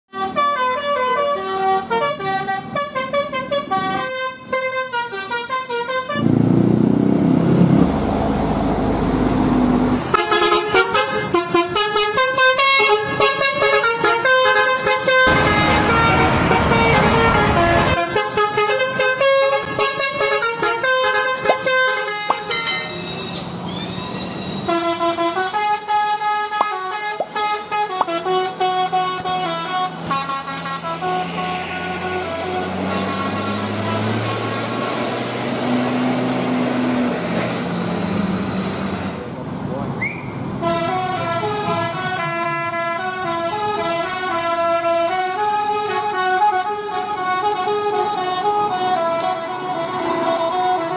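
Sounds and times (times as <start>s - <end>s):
musical bus horn melody: 0.1s - 6.5s, 10.0s - 23.6s, 24.6s - 36.4s, 40.6s - 50.9s
loud noisy rushing: 15.3s - 18.0s.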